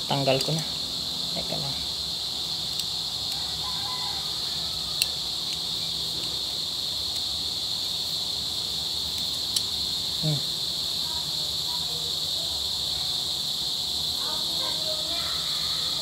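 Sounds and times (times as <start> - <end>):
crickets chirring: 0.0 - 16.0
sharp small clicks: 2.6 - 3.5, 4.9 - 6.4, 7.0 - 7.4, 8.5 - 9.8.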